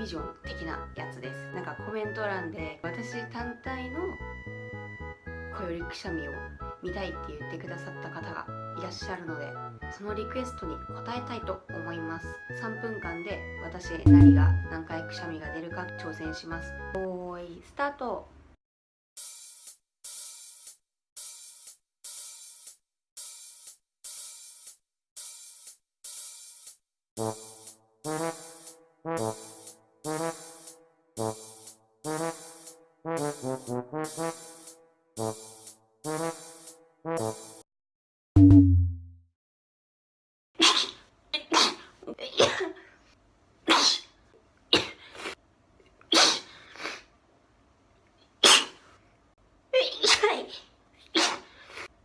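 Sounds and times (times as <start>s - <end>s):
person sneezing: 40.6s - 42.8s, 43.7s - 44.2s, 44.8s - 45.4s, 46.1s - 47.1s, 48.4s - 48.9s, 49.9s - 51.9s.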